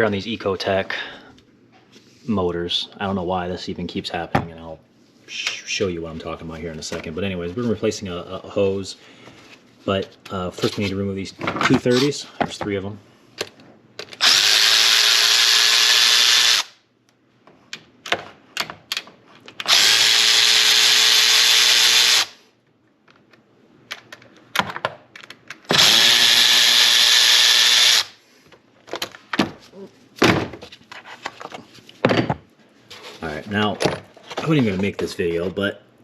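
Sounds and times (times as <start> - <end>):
power driver whining: 25.7 - 28.1.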